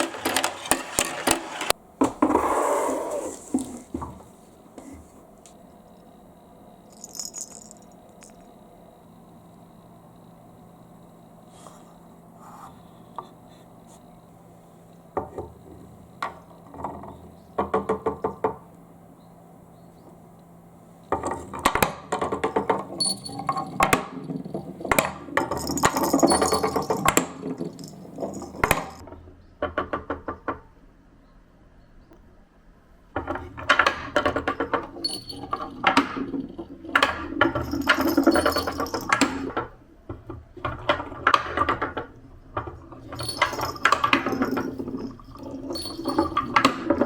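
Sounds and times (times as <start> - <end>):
marbles clattering on marble run: 0.0 - 1.7, 6.9 - 8.4, 21.1 - 29.0, 33.2 - 39.8, 40.6 - 47.0
faint steady hum: 0.0 - 47.0.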